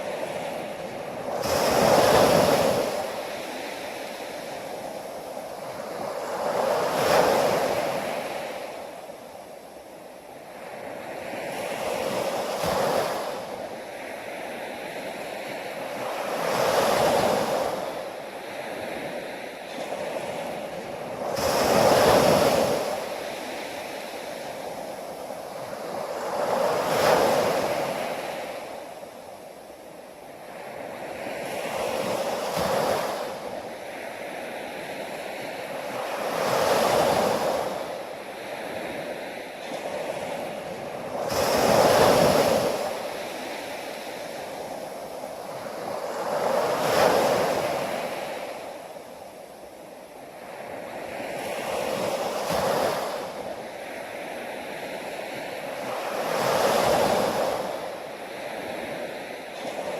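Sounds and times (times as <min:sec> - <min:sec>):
ocean waves breaking: 0:00.0 - 0:09.6, 0:10.5 - 0:59.9.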